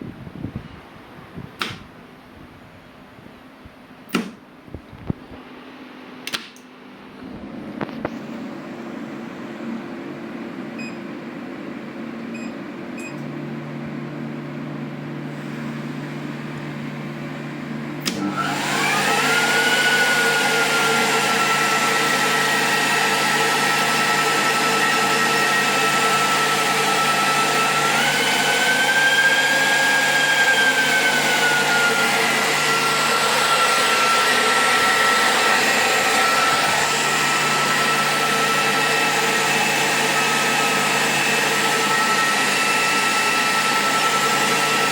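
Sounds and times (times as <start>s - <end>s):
electric motor whining: 18.0s - 44.9s.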